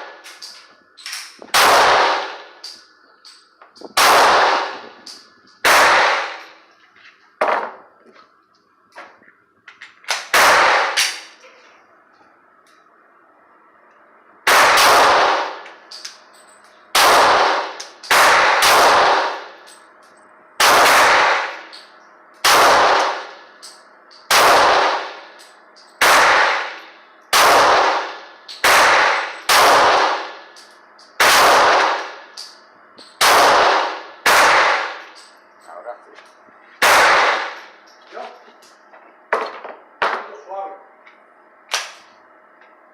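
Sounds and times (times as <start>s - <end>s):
pistol shots with echo: 1.5s - 2.7s, 3.9s - 4.9s, 5.6s - 6.6s, 10.1s - 11.3s, 14.5s - 15.6s, 16.9s - 19.6s, 20.6s - 21.7s, 22.4s - 23.5s, 24.3s - 25.4s, 26.0s - 30.5s, 31.2s - 32.6s, 33.2s - 35.1s, 36.8s - 37.8s.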